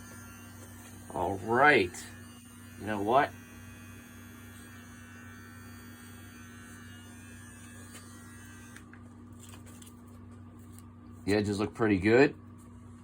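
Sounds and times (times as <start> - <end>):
electric trimmer motor humming: 0.0 - 9.0.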